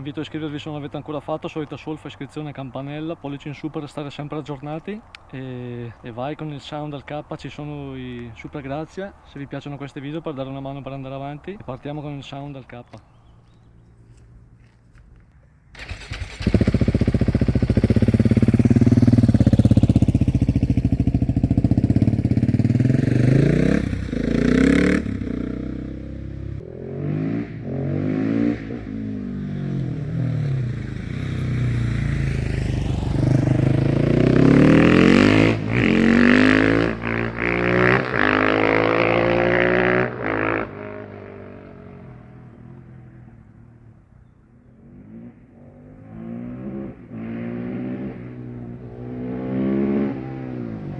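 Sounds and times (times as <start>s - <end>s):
exhaust cracks: 15.0s - 26.6s
motorcycle engine revving: 15.7s - 43.7s, 44.8s - 50.9s.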